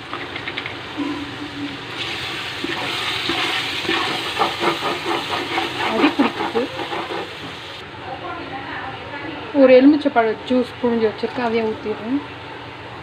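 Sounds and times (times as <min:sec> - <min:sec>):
food sizzling in hot oil: 0:00.9 - 0:07.8
ladle scraping metal pot: 0:01.0 - 0:07.7.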